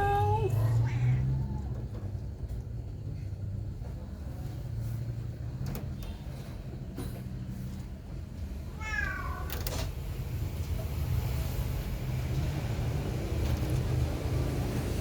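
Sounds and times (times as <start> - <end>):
cat meowing: 0.1 - 1.7, 8.8 - 9.5.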